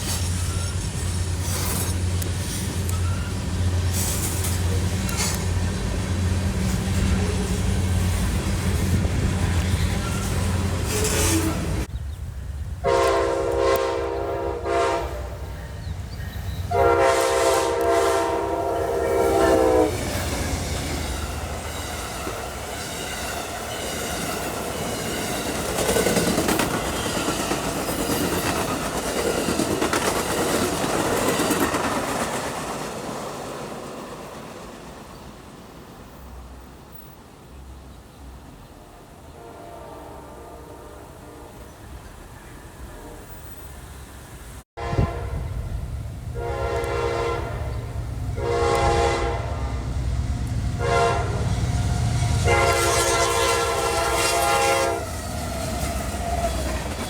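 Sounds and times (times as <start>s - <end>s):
train wheels clattering on rails: 0.0s - 11.7s, 19.8s - 35.8s, 52.5s - 57.0s
locomotive air horn blasts: 12.8s - 15.6s, 16.7s - 20.0s, 38.8s - 41.8s, 42.8s - 43.6s, 44.8s - 49.9s, 50.8s - 55.3s.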